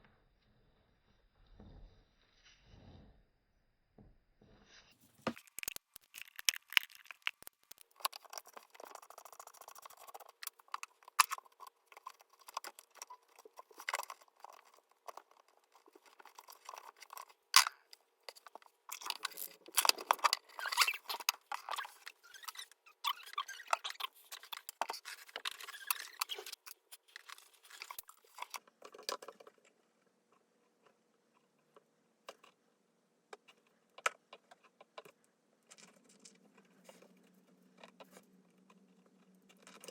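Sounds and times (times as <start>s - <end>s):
tools clicking and scraping on cord: 5.3s - 29.6s.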